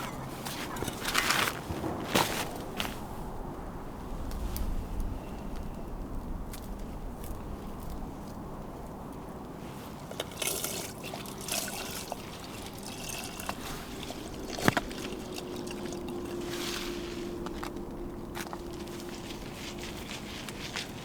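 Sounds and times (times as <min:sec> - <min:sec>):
water pouring into a pot: 0:10.1 - 0:16.5.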